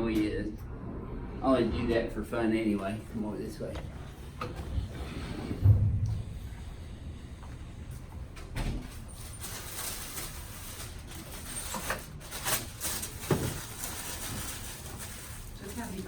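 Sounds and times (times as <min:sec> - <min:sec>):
knocks and shuffles: 0:02.8 - 0:11.2.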